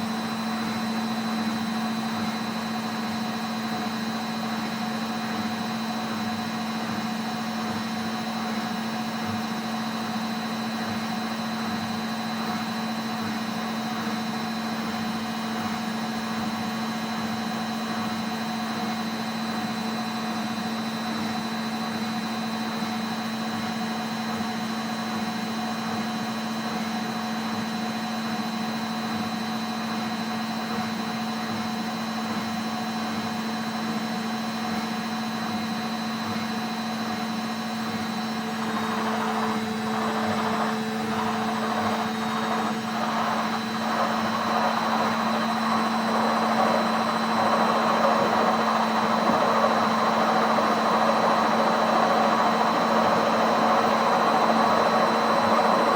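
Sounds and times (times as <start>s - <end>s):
washing machine motor hum: 37.1s - 55.9s.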